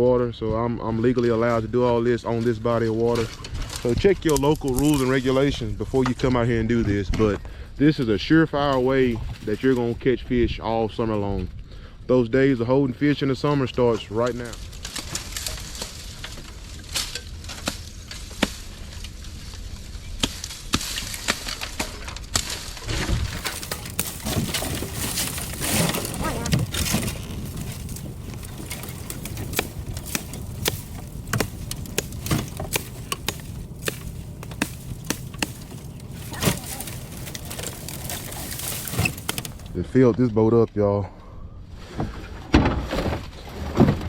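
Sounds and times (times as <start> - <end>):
brush crackling and rustling: 2.3 - 6.1, 13.8 - 39.8
branches snapping: 3.1 - 5.2, 14.2 - 39.8.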